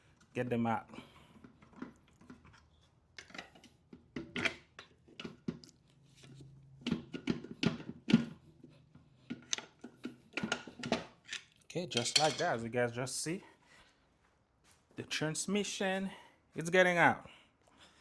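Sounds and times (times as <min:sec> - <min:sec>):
metal knocks and clinks: 0:11.9 - 0:12.6.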